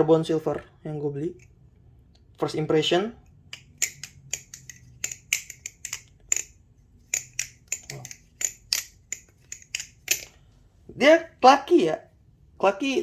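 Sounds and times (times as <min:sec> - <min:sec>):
knife handles clacking: 0:03.5 - 0:10.4.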